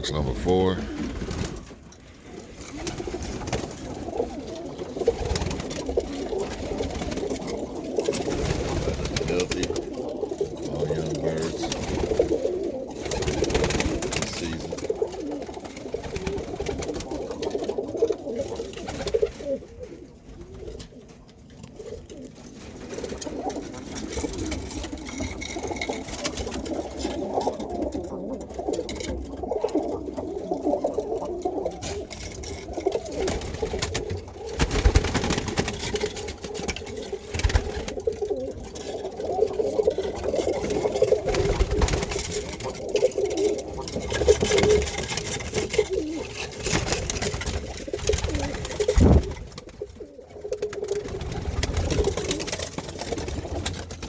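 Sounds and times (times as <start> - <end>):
pigeons cooing: 0.0 - 54.0.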